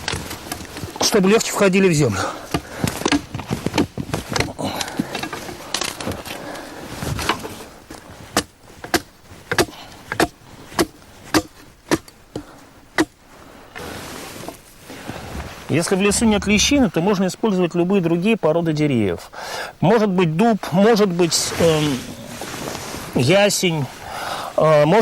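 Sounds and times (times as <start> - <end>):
blade chopping wood: 8.4 - 12.1.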